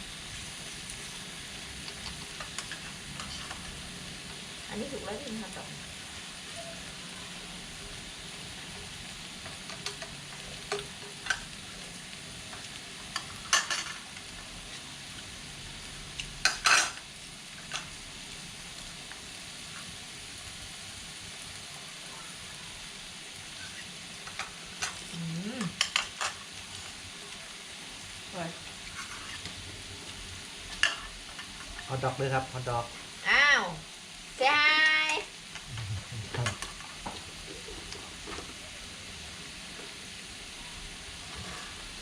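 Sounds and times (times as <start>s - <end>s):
pork sizzling on grill pan: 0.0s - 42.0s
utensils clinking against pan: 9.5s - 11.6s, 12.5s - 14.1s, 16.4s - 17.0s, 30.7s - 31.8s.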